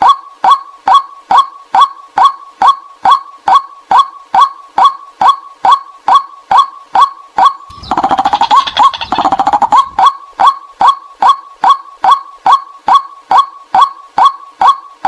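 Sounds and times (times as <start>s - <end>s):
rapid harsh bird chattering: 7.7s - 10.1s.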